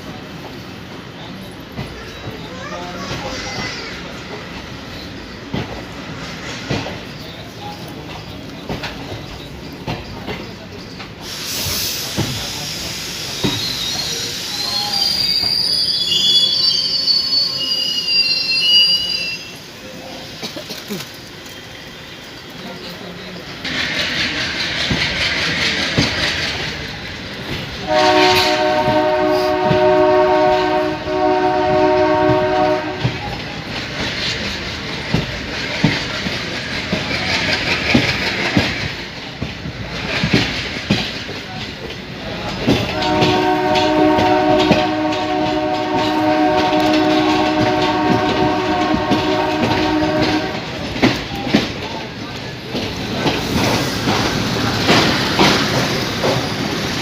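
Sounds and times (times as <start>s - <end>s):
train wheels clacking on rails: 0.0s - 17.9s, 20.0s - 57.0s
two-tone locomotive air horn: 27.8s - 33.2s, 42.9s - 50.8s.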